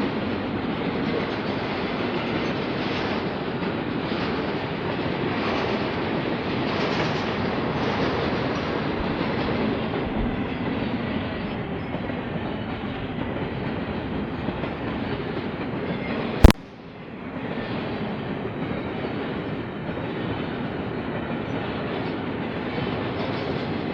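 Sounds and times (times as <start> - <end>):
freight train wheels clattering on rails: 0.0 - 16.4, 17.2 - 23.9
loud sharp click: 16.4 - 16.6.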